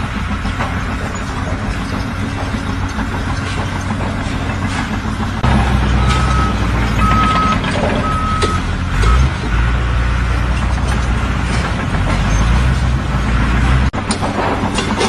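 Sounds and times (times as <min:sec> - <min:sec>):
heavy vehicle engine running: 0:00.0 - 0:15.0
reversing alarm beeping: 0:05.7 - 0:09.3.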